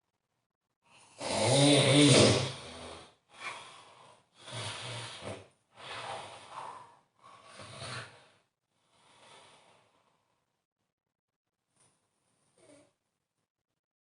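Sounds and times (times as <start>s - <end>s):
person snoring heavily: 1.0s - 9.6s.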